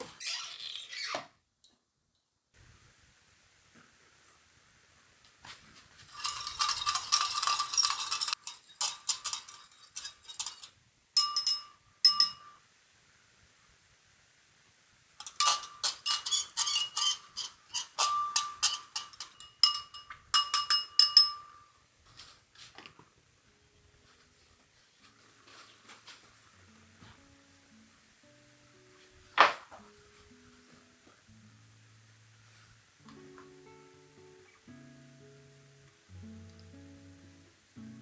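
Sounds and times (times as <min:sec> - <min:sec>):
metal kitchenware clattering: 0:06.1 - 0:12.5, 0:15.2 - 0:21.6.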